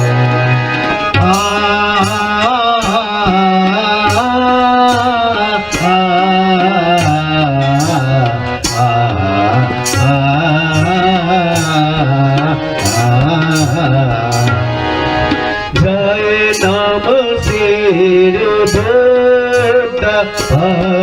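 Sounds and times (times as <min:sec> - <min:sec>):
hand drum beat: 0:05.8 - 0:14.7.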